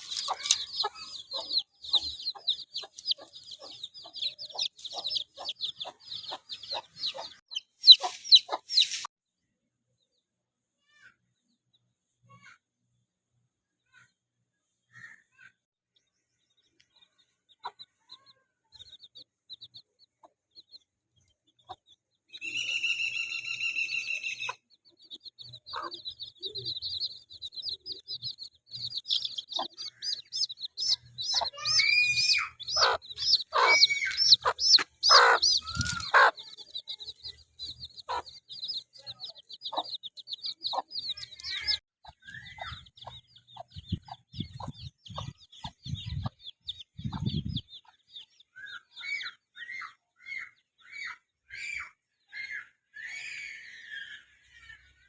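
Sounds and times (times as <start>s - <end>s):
chicks peeping: 0.0s - 9.1s, 17.5s - 51.9s
hen clucking: 0.0s - 9.1s, 24.4s - 48.0s.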